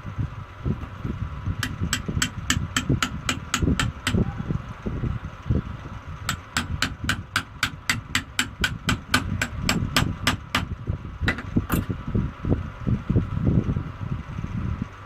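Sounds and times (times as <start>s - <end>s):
metal-on-metal taps: 11.3s - 11.9s
parts being handled: 11.3s - 12.0s.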